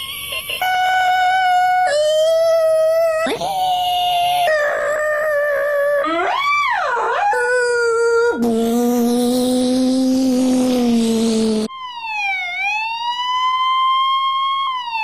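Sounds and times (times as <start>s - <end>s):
people imitating a siren: 0.0s - 10.3s, 11.4s - 15.0s.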